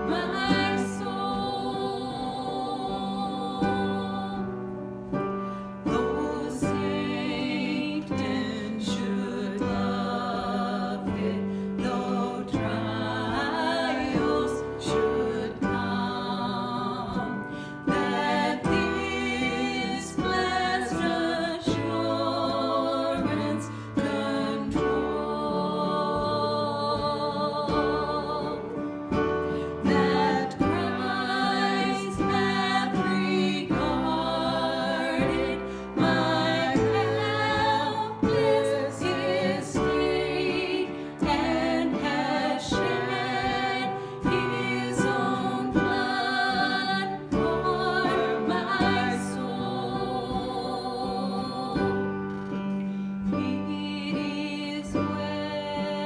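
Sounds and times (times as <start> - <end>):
person singing with vibrato: 0.0 - 52.6.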